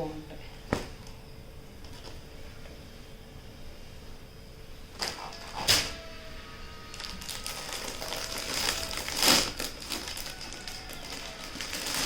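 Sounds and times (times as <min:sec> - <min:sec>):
packaging and fabric rustling: 0:06.9 - 0:12.0.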